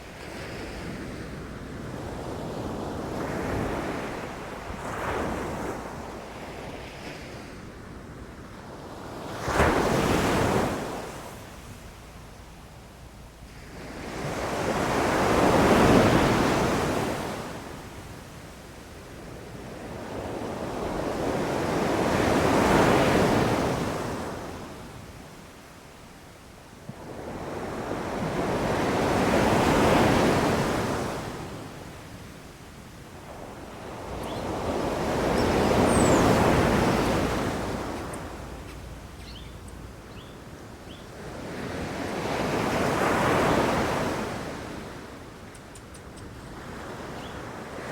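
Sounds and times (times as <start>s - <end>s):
faint high bird chirps: 34.2s - 34.7s, 35.3s - 37.1s, 37.9s - 41.1s, 47.1s - 47.5s.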